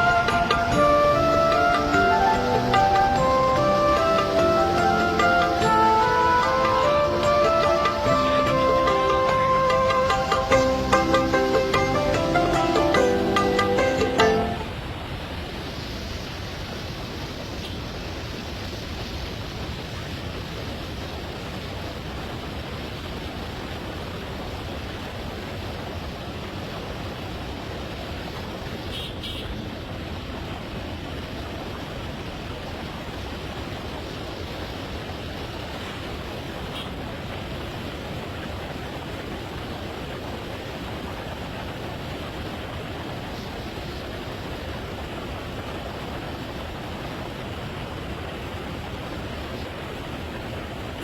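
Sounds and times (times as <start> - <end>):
steady rushing noise: 0.0 - 29.0.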